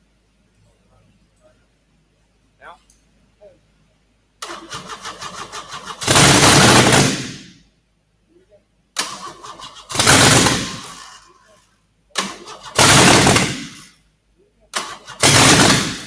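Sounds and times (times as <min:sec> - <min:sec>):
starter cranking engine: 0:04.4 - 0:07.2, 0:09.0 - 0:11.5, 0:12.2 - 0:13.8, 0:14.8 - 0:16.0
engine firing up loudly: 0:04.4 - 0:07.5, 0:09.0 - 0:11.6, 0:12.2 - 0:14.0, 0:14.8 - 0:16.0.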